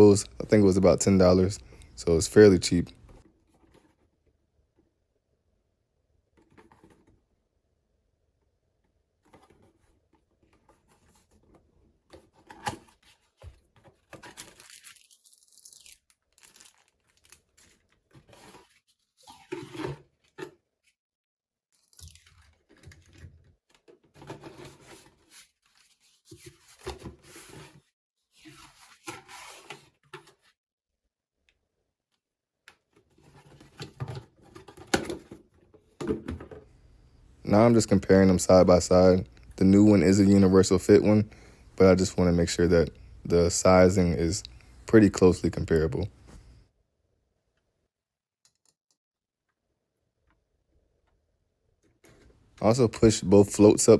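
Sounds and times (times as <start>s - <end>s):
plastic packaging tearing and crinkling: 14.0s - 18.8s.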